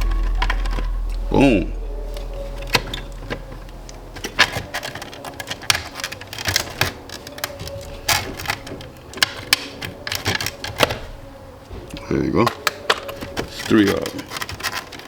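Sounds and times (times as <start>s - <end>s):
hand tools clicking and clinking: 4.4s - 11.1s, 12.4s - 15.0s.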